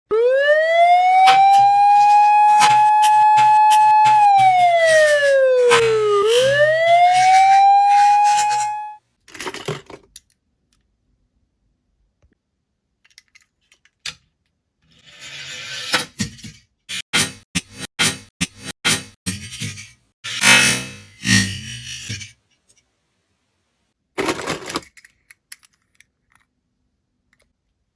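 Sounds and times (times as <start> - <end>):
toy siren wailing: 0.1 - 9.0.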